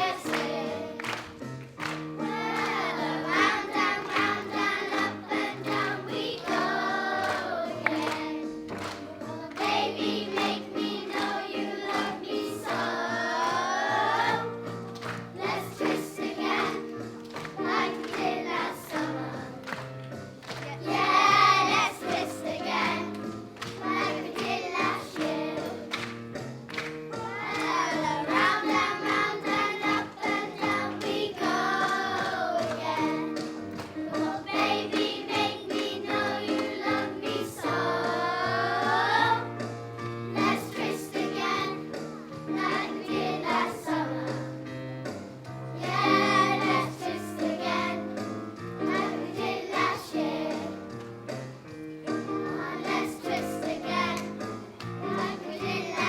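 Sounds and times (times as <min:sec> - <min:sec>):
children singing: 0:00.0 - 0:01.2, 0:02.2 - 0:19.8, 0:20.6 - 0:25.9, 0:27.1 - 0:39.7, 0:40.3 - 0:44.6, 0:45.8 - 0:50.8, 0:52.1 - 0:56.0
instrumental accompaniment: 0:00.0 - 0:56.0.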